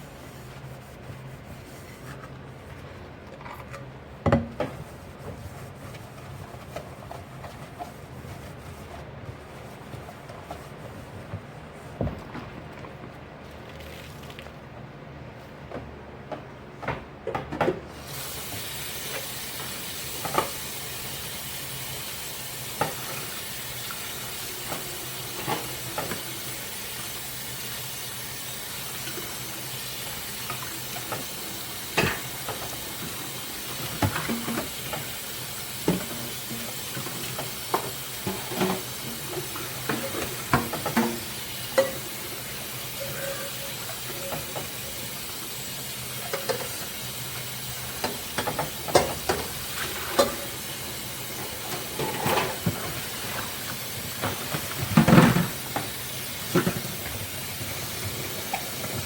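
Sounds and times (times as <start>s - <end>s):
water running into sink: 18.1s - 59.0s.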